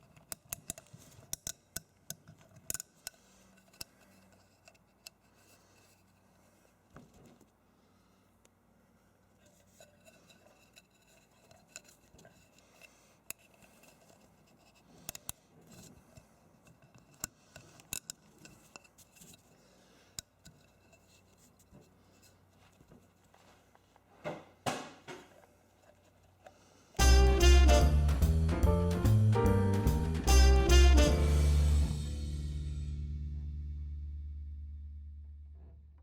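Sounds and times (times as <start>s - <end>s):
small parts clicking and rubbing: 0.0s - 6.3s, 9.3s - 24.0s.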